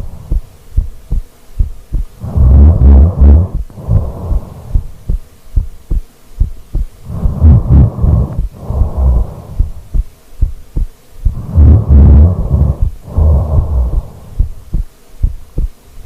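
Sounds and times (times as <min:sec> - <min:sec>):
heartbeat soft low thumps: 0:00.0 - 0:15.8
snoring breath: 0:02.2 - 0:05.0, 0:07.0 - 0:10.0, 0:11.3 - 0:14.6.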